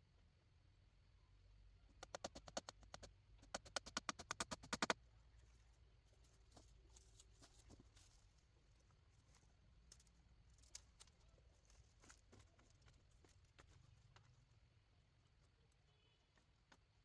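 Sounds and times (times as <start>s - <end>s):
rapid sharp taps: 1.9s - 5.0s.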